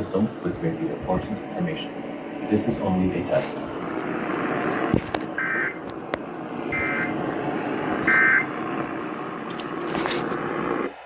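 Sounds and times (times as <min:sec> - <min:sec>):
radio static hiss: 0:00.0 - 0:11.0
two-tone warbling squeals: 0:06.7 - 0:07.2, 0:08.0 - 0:08.6.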